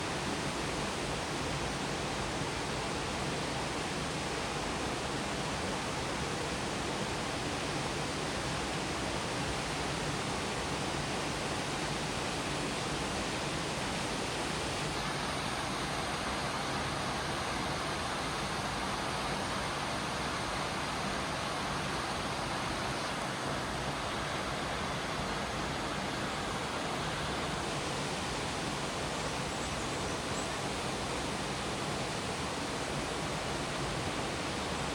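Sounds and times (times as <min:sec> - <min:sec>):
waterfall rushing: 0:14.1 - 0:29.6.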